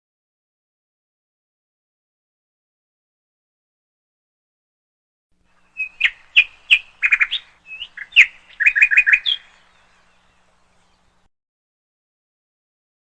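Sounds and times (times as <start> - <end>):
bird chirping: 5.5 - 11.3.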